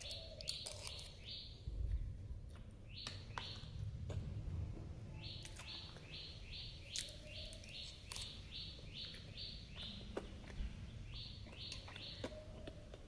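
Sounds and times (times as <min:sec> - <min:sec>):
bird chirping rapidly: 0:05.1 - 0:12.2.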